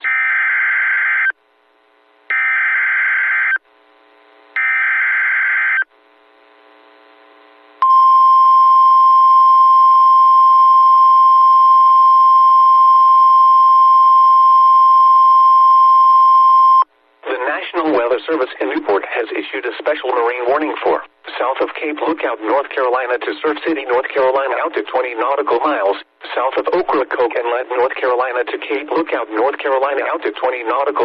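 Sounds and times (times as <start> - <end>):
steady attention tone: 7.8 - 16.9.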